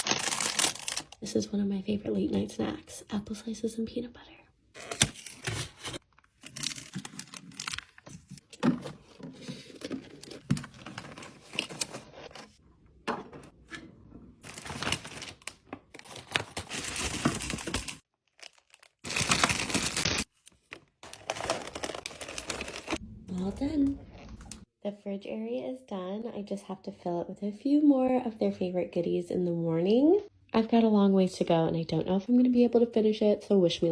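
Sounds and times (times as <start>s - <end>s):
plastic packaging crinkling: 0.0s - 1.2s, 4.8s - 8.6s, 14.4s - 23.0s.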